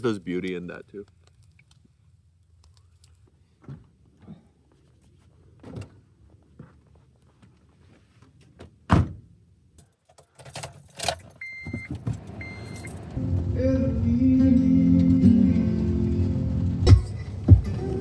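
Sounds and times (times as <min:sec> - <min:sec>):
car door shutting: 0:08.9 - 0:09.3, 0:11.3 - 0:13.6
short electronic beeps: 0:11.4 - 0:13.0.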